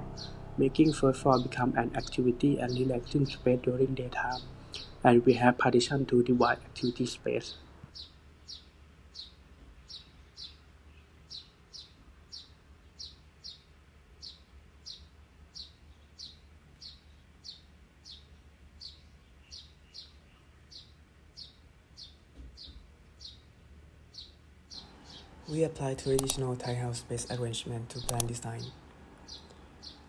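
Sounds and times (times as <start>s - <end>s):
small bird chirping: 26.1s - 26.5s, 28.0s - 28.7s.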